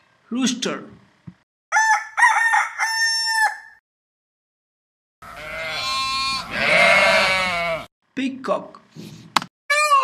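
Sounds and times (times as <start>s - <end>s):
rooster crowing: 1.7s - 3.8s
long loud animal call: 5.2s - 7.9s.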